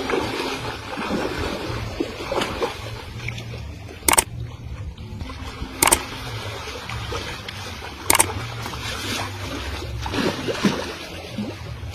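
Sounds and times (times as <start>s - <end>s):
water splashing and trickling: 0.0s - 11.9s
sharp clicks: 4.1s - 4.3s.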